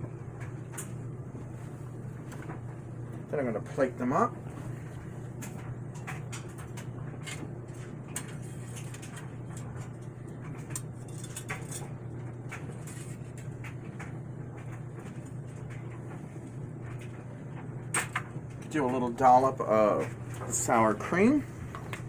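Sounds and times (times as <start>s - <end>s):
steady low hum: 0.0s - 22.0s
utensils and dishes clinking: 10.6s - 11.9s.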